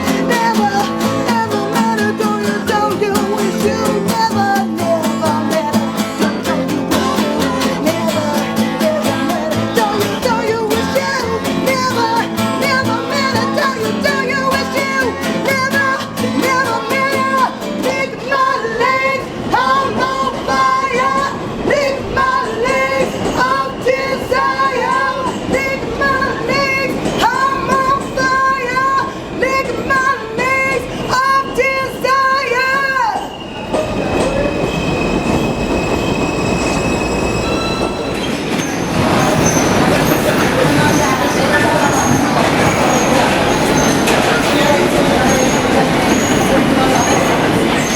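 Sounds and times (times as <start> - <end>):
person singing: 0.0 - 33.3
acoustic guitar: 0.0 - 33.4, 36.9 - 47.9.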